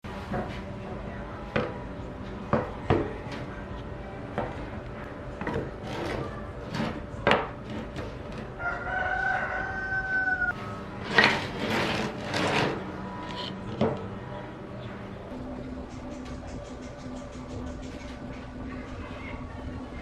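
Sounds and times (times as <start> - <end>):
rooster crowing: 8.4 - 10.9.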